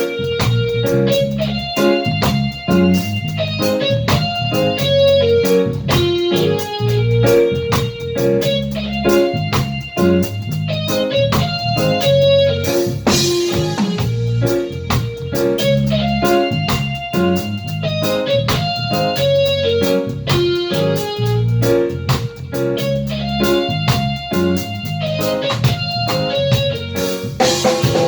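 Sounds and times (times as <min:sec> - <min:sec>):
live reggae band playing: 0:00.0 - 0:28.0.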